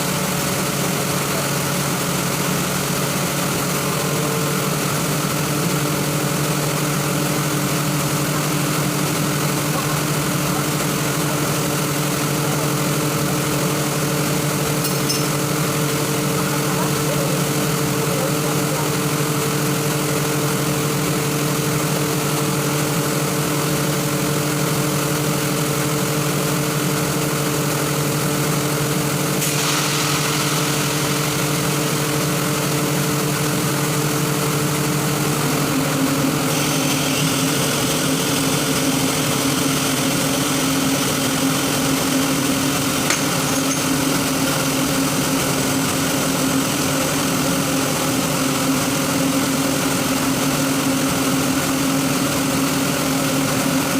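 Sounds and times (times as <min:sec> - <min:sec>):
air compressor humming: 0:00.0 - 0:53.9.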